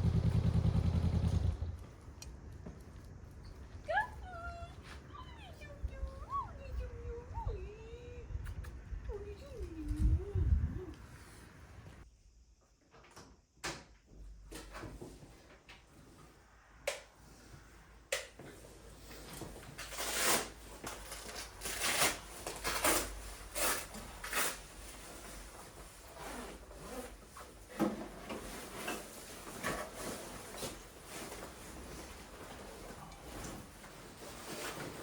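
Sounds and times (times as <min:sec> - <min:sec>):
rustling and scraping handling: 0:18.4 - 0:35.0.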